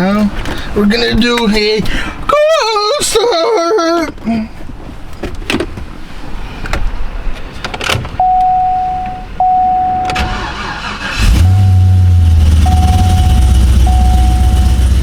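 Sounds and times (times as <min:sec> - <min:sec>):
car engine starting and rumbling: 0:07.8 - 0:15.0
car chime: 0:08.2 - 0:11.8, 0:12.6 - 0:15.0.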